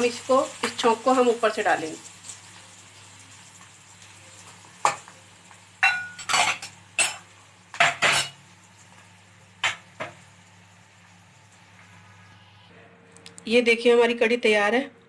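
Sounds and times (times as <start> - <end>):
spoon clinking against pots: 5.8 - 8.4.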